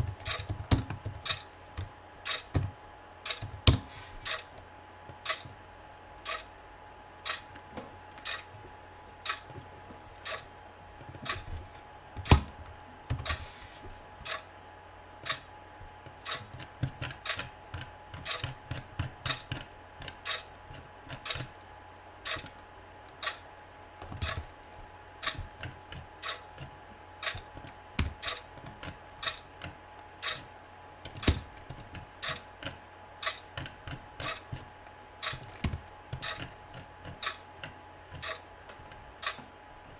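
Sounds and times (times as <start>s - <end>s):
clock ticking: 0.0s - 4.5s, 5.2s - 5.5s, 6.2s - 6.5s, 7.2s - 8.5s, 9.2s - 9.6s, 10.2s - 10.5s, 14.2s - 14.5s, 15.2s - 15.5s, 16.2s - 20.5s, 21.1s - 21.6s, 22.2s - 23.5s, 24.1s - 24.6s, 25.2s - 29.5s, 30.2s - 30.5s, 31.2s - 39.6s
keyboard typing: 0.0s - 4.6s, 12.2s - 13.6s.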